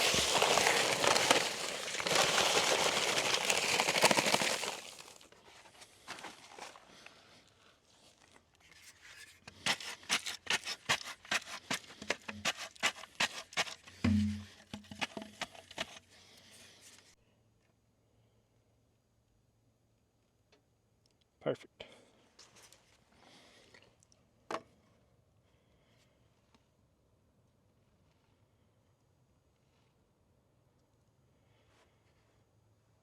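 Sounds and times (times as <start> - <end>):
paper bag crumpling and tearing: 0.0 - 5.3
sharp taps and knocks: 13.9 - 15.6.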